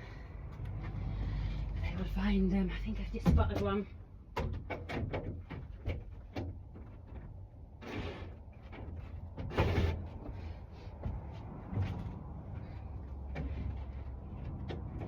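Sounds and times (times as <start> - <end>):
tools clicking and knocking on wood: 3.2 - 7.5, 13.2 - 15.0.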